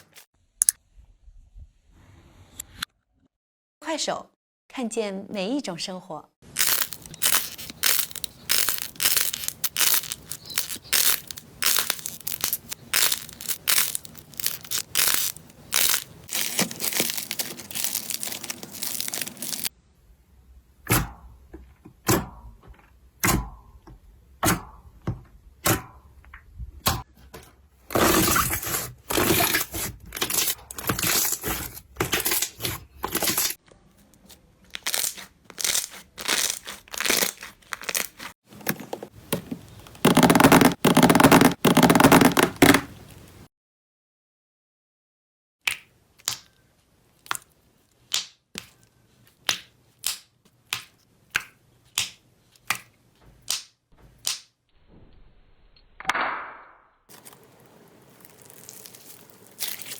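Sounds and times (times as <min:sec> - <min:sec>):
slime crackling and popping: 0:06.5 - 0:19.7, 0:34.7 - 0:38.3, 0:57.1 - 0:59.9.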